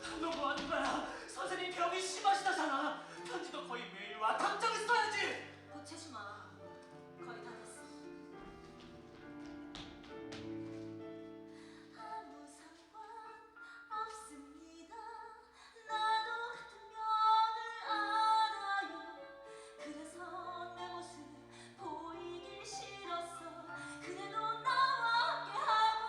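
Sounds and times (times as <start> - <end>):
instrumental accompaniment: 6.4 - 11.6
woman singing: 11.8 - 26.0.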